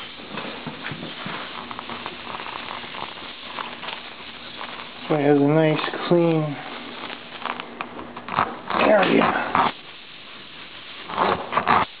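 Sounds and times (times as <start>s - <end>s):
reamer rasping in tire: 0.0s - 7.7s.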